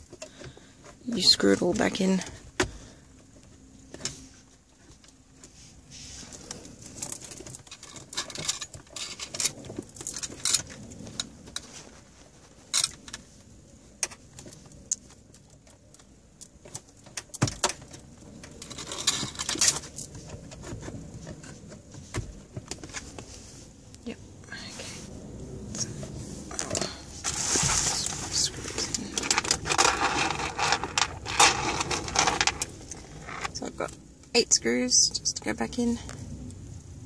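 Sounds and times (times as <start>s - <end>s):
plastic clicks and rustling: 26.5s - 33.7s.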